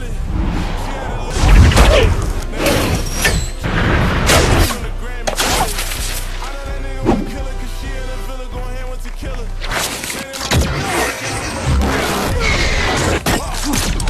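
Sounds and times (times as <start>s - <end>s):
action film music: 0.0s - 14.0s.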